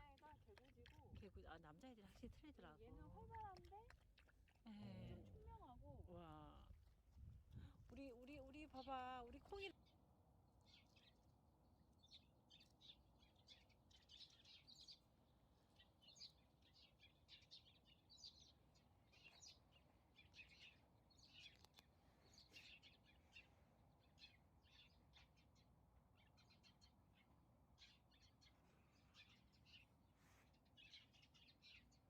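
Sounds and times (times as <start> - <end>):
small birds chirping: 7.2 - 32.0.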